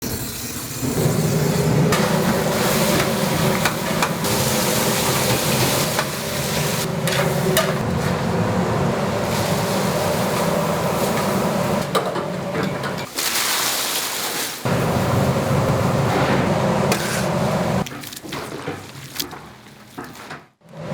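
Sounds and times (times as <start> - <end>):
steady machine hum: 0.8 - 13.0, 14.7 - 17.8
metal utensils clanking: 1.9 - 8.2, 9.2 - 13.2.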